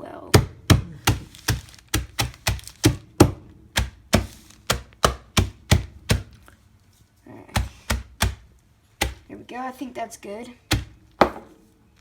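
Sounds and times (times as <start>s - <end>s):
cereal pounded in plastic bag: 0.4s - 6.4s, 7.5s - 9.3s.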